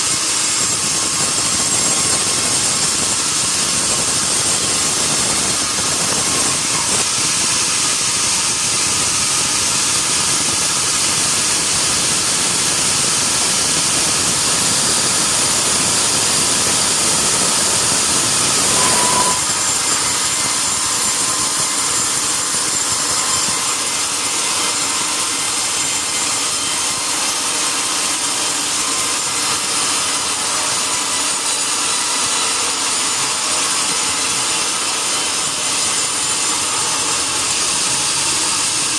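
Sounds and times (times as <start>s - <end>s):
saw blade cutting log: 0.0s - 38.9s.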